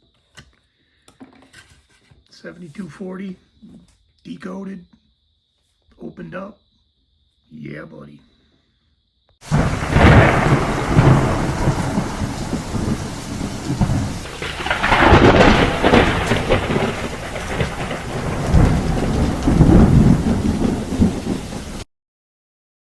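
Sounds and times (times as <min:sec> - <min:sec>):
rolling thunder: 0:09.4 - 0:21.9
steady rain: 0:09.4 - 0:21.9.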